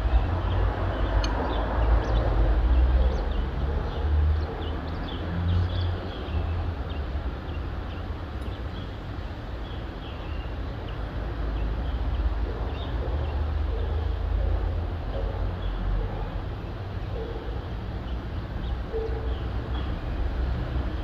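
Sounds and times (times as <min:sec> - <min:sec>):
small birds chirping: 0:00.0 - 0:14.0
distant traffic rumble: 0:00.0 - 0:21.0.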